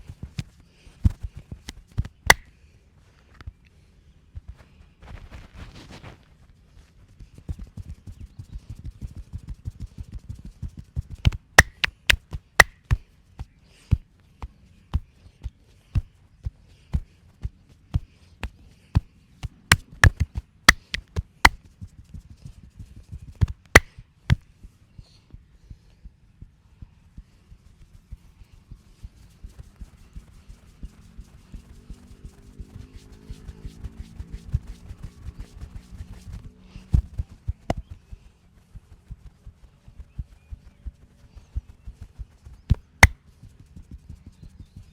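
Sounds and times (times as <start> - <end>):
sharp slaps: 1.7 - 2.5, 11.3 - 13.0, 19.4 - 21.6, 23.7 - 24.0, 42.7 - 43.2.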